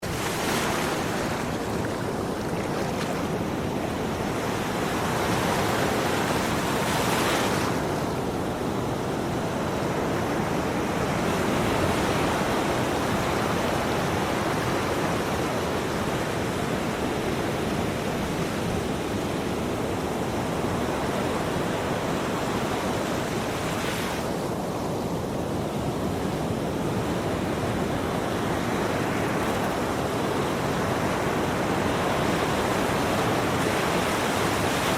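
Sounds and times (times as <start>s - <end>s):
ocean waves washing on shore: 0.0s - 34.9s.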